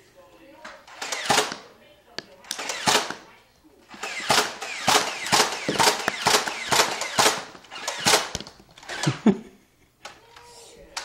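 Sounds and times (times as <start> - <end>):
toy blaster firing: 0.9 - 1.6, 2.4 - 3.2, 3.9 - 9.2.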